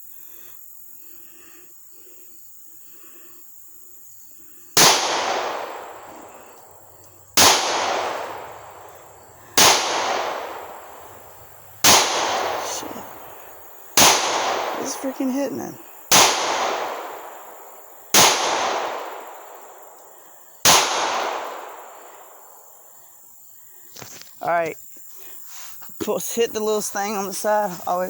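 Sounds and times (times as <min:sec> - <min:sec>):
pistol shots: 0:04.8 - 0:06.7, 0:07.3 - 0:13.3, 0:14.0 - 0:19.6, 0:20.6 - 0:22.0.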